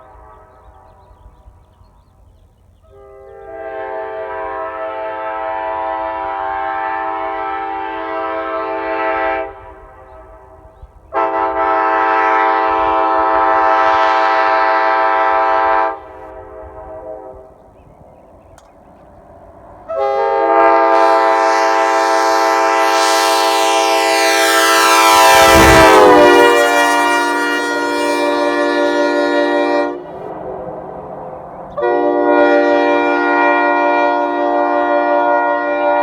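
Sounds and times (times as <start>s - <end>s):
locomotive air horn chord: 2.9s - 17.6s, 19.9s - 31.0s, 31.8s - 36.0s.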